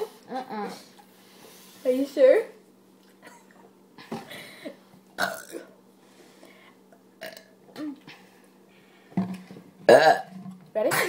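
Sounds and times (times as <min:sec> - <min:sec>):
person burping: 0:05.2 - 0:05.8, 0:07.2 - 0:08.0, 0:09.9 - 0:11.0.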